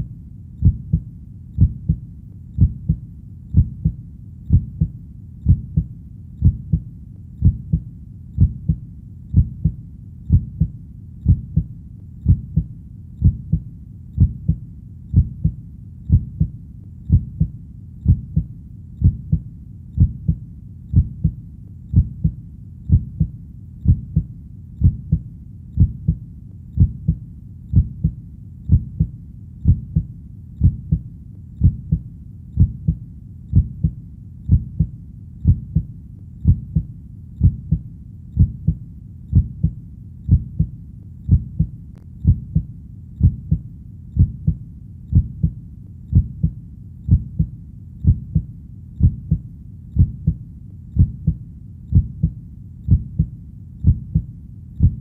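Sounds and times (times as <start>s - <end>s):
heartbeat double thump: 0.6s - 1.0s, 1.6s - 2.0s, 2.6s - 6.8s, 7.4s - 7.8s, 8.4s - 13.6s, 14.2s - 16.5s, 17.1s - 19.4s, 20.0s - 25.2s, 25.8s - 26.2s, 26.8s - 31.0s, 31.6s - 32.0s, 32.6s - 40.7s, 41.3s - 43.6s, 44.2s - 49.4s, 50.0s - 50.4s, 51.0s - 55.0s.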